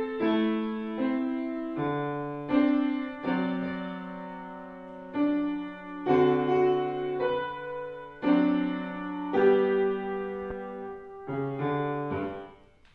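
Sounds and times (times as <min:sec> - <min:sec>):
slow piano chords: 0:00.0 - 0:12.9.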